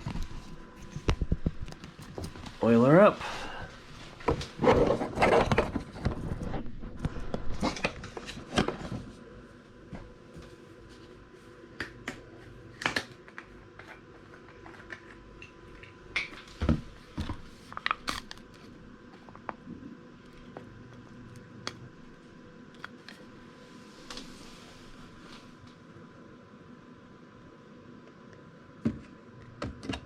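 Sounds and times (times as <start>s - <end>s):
plastic parts clicking: 22.7s - 23.3s.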